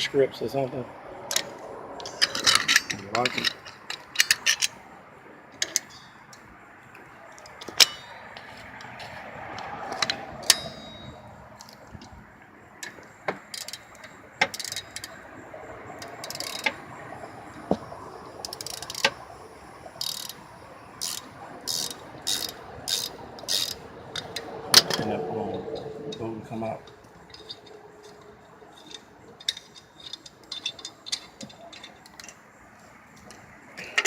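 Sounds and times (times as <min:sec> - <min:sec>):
metallic clicks and knocks: 0:01.3 - 0:04.8, 0:12.8 - 0:15.2, 0:21.1 - 0:32.5
ratchet wrench clicking: 0:12.8 - 0:15.2, 0:16.0 - 0:16.8, 0:18.4 - 0:19.2, 0:20.0 - 0:26.2, 0:26.8 - 0:32.4.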